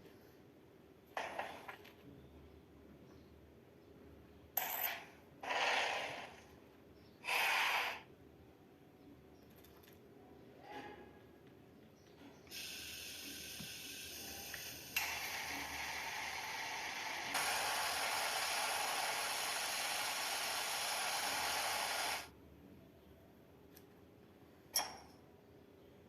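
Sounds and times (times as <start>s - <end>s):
tool spraying with a hiss: 12.5s - 22.3s.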